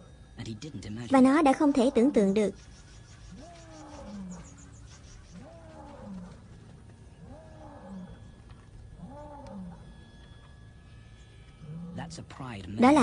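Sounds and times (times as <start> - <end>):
distant lion roaring: 3.3 - 10.6, 11.2 - 12.2.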